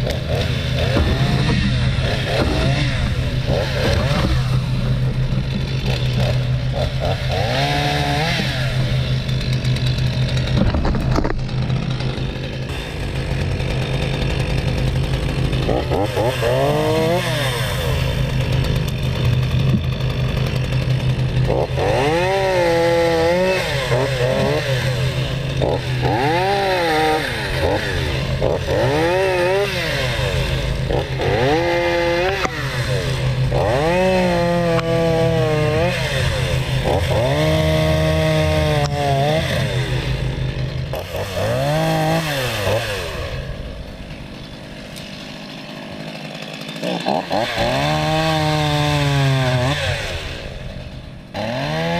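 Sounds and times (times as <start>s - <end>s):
chainsaw idling and revving: 0.0s - 51.9s.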